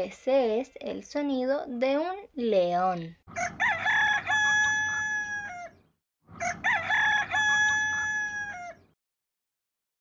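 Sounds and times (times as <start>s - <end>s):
rooster crowing: 3.3s - 9.0s.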